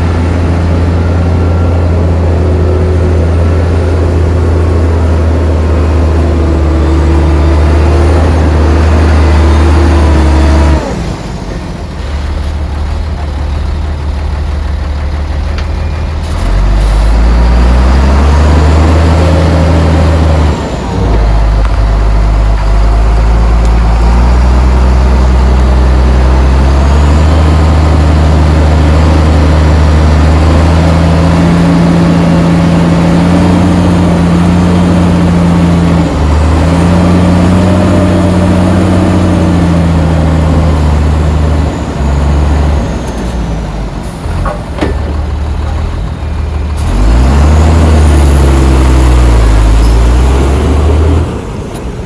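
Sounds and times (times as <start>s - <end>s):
heavy diesel engine revving: 0.0s - 52.0s.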